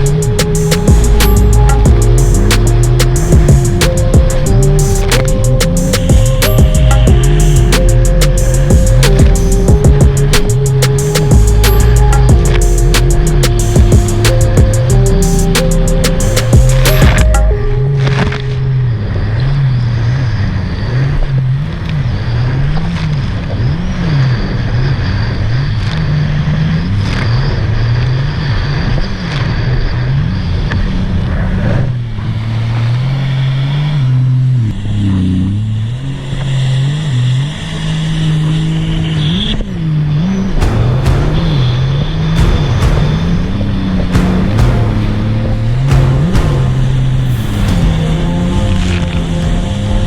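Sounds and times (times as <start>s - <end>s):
personal watercraft engine revving: 18.0s - 50.0s.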